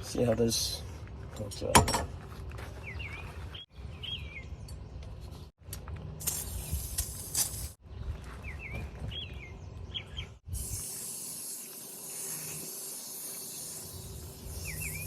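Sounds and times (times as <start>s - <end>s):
bird chirps: 2.8s - 5.0s, 14.5s - 15.0s.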